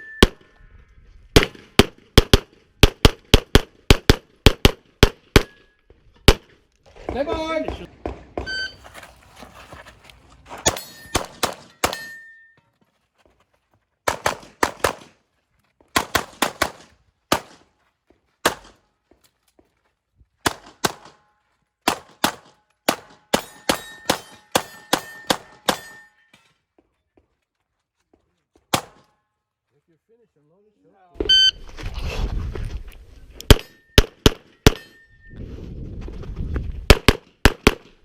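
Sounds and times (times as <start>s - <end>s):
pistol fire: 1.4s - 5.6s, 10.7s - 12.1s, 14.1s - 15.2s, 16.0s - 17.6s, 18.4s - 18.8s, 20.4s - 21.2s, 21.9s - 26.0s, 28.7s - 29.0s, 36.9s - 37.9s
shot timer beep: 8.4s - 8.8s, 31.2s - 31.6s
steel targets ringing: 10.7s - 12.6s, 23.2s - 26.5s, 33.5s - 35.3s.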